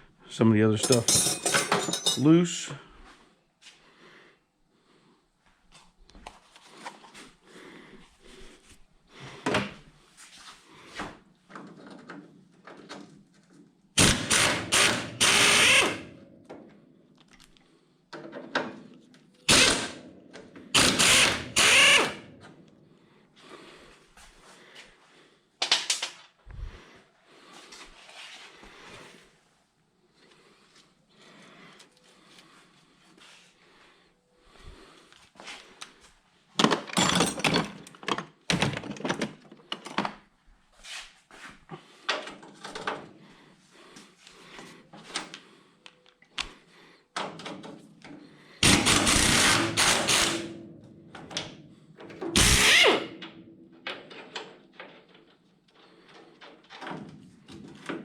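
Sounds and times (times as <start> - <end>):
tool clinks and handling: 0.7 - 2.5, 36.6 - 38.3
impact wrench bursts: 14.0 - 16.2, 19.5 - 20.1, 20.7 - 22.3, 48.6 - 50.6, 52.4 - 53.2.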